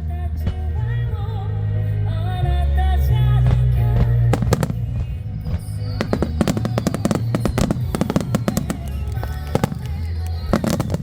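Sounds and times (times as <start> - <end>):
fireworks bursting and banging: 3.4 - 11.0.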